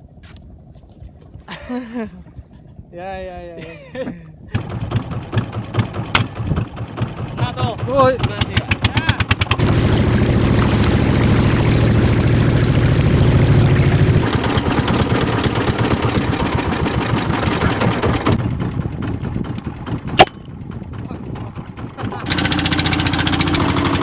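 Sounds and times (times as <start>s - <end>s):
boat engine running: 9.2s - 18.4s, 21.8s - 24.0s.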